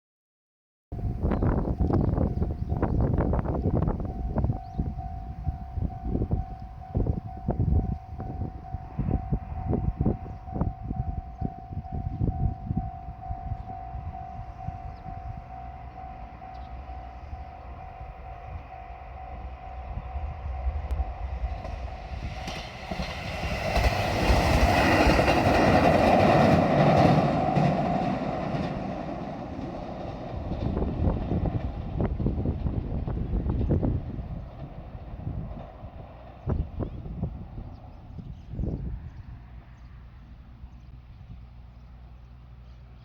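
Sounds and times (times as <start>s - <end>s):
level crossing warning bell: 1.0s - 21.5s
wind buffeting microphone: 1.0s - 41.9s
diesel train rumbling past: 1.0s - 43.0s.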